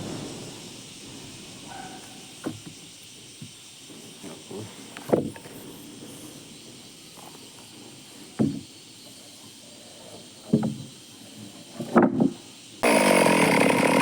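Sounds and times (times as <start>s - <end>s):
chainsaw starter cord pulls: 12.8s - 14.0s.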